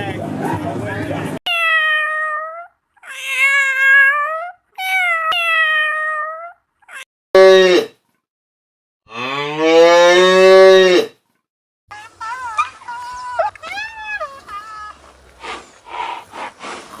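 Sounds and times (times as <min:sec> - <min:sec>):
farm animal calls: 0:11.9 - 0:17.0.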